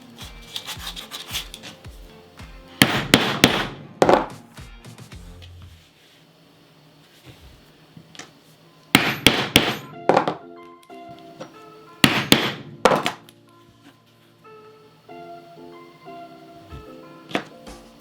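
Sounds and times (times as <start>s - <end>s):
background music: 0.0s - 6.0s, 8.9s - 18.0s
mallet striking leather punch: 2.8s - 4.3s, 9.0s - 9.9s, 12.0s - 13.1s.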